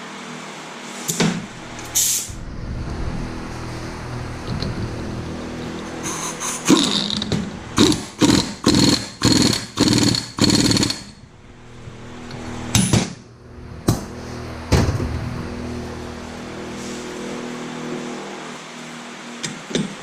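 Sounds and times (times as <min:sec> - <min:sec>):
tool rattling bursts: 0:06.1 - 0:11.2.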